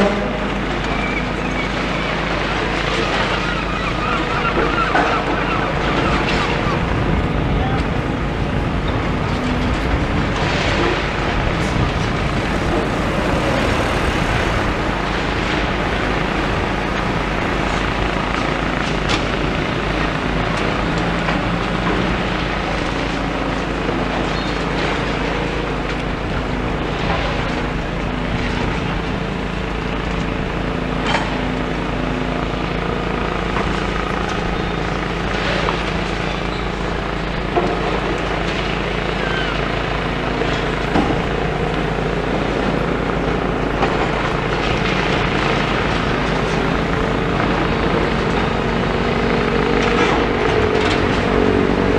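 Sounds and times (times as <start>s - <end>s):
excavator diesel engine running: 0.0s - 51.9s.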